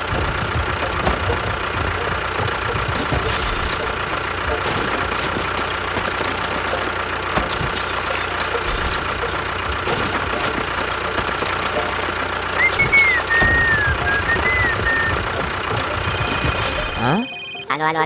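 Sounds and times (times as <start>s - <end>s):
small engine running: 0.0s - 17.6s
high wavering whistle: 12.6s - 15.2s.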